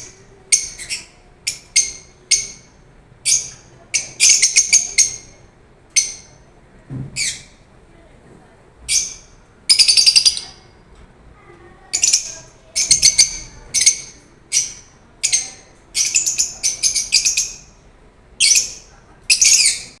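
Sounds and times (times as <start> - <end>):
lovebirds chirping: 0.0 - 7.6, 8.8 - 10.8, 11.7 - 20.0.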